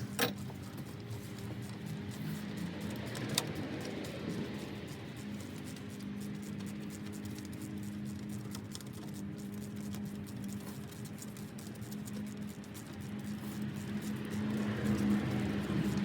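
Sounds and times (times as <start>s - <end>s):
hand tools clicking and scraping: 0.0s - 5.7s
steady low hum: 0.0s - 16.0s.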